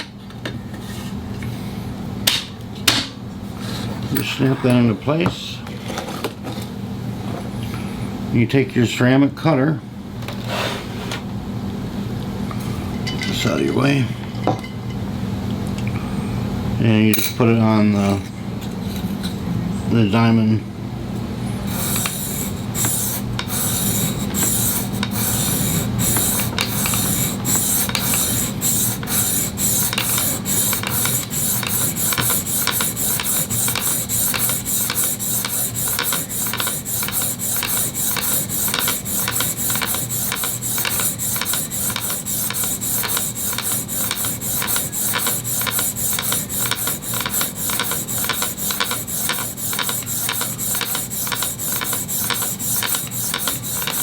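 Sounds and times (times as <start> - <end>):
blade rasping on sharpening plate: 21.7 - 54.0.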